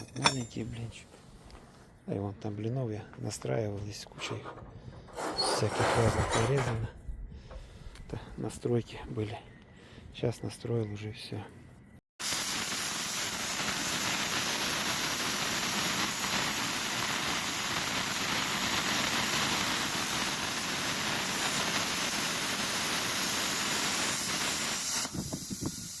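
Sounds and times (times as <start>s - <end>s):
plasma cutter hissing: 12.2s - 26.0s.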